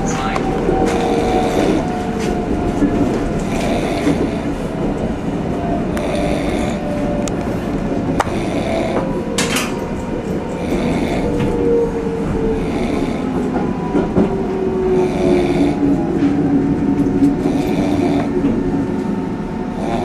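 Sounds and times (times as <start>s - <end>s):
train carriage rumble and clatter: 0.0s - 20.0s
man snoring: 0.8s - 1.9s, 3.4s - 4.6s, 6.0s - 7.0s, 8.2s - 9.2s, 10.6s - 11.6s, 12.5s - 13.5s, 15.0s - 15.9s, 17.4s - 18.4s, 19.7s - 20.0s.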